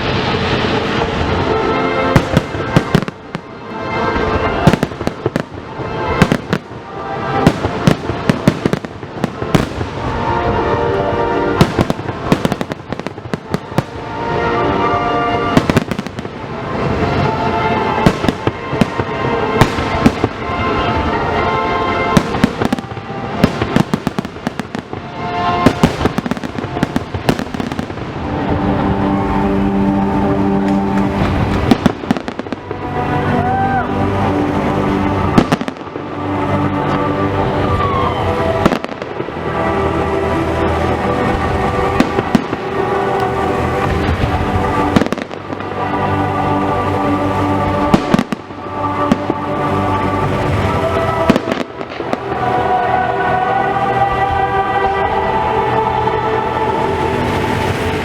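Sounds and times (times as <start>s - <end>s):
music playing: 0.0s - 58.0s.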